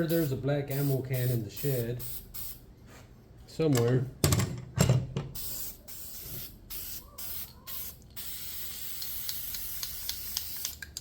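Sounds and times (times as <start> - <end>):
aerosol spray can hissing: 5.4 - 10.9.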